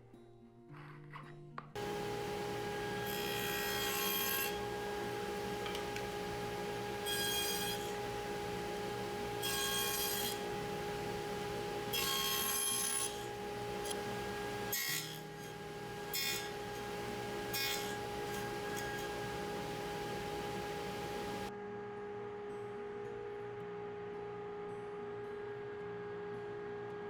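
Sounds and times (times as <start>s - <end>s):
steady held tone: 13.1s - 14.7s, 15.5s - 21.5s.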